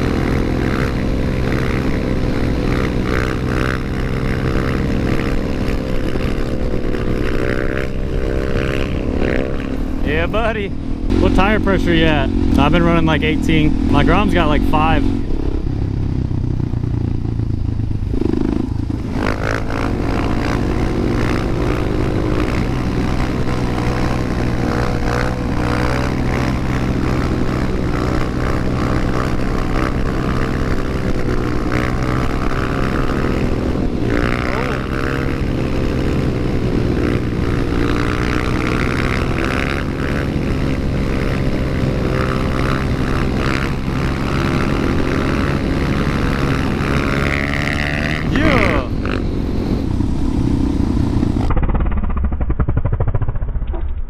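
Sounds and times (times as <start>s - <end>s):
motorcycle engine running: 0.0s - 54.0s
rushing noise: 46.6s - 53.6s.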